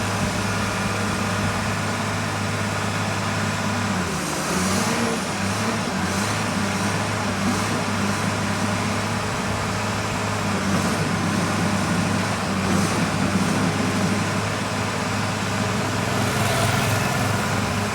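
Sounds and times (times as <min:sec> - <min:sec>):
excavator diesel engine running: 0:05.9 - 0:17.9.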